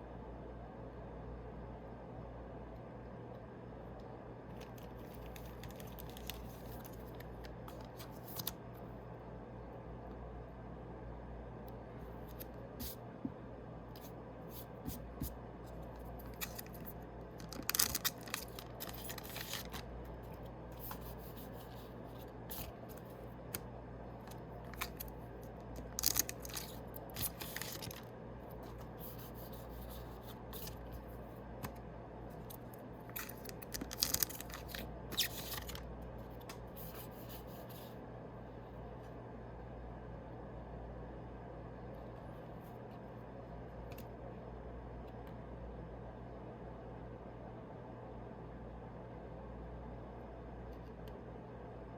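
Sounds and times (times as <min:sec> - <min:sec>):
steady low hum: 0:00.0 - 0:51.9
packs crinkling and rustling: 0:16.3 - 0:19.9, 0:25.8 - 0:28.1, 0:33.1 - 0:35.9.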